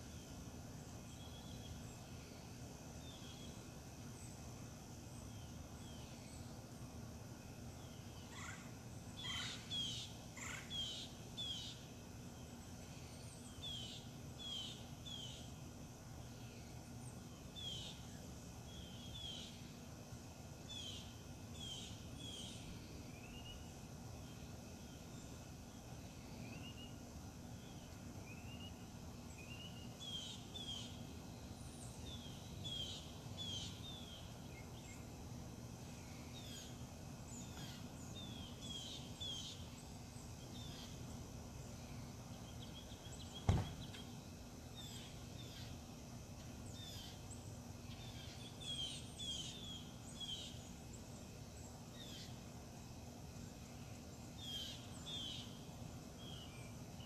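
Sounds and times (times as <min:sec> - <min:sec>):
birds chirping: 0:00.0 - 0:57.0
sharp knock: 0:43.4 - 0:43.8.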